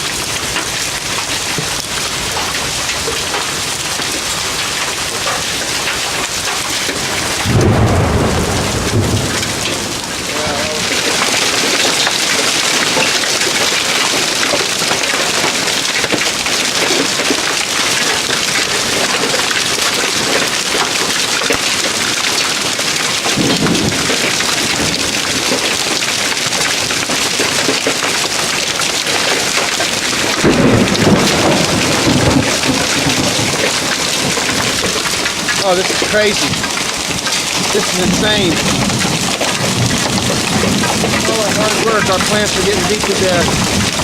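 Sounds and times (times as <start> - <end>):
heavy hail clattering: 0.0 - 44.0
low rumbles: 1.0 - 11.8, 30.3 - 44.0.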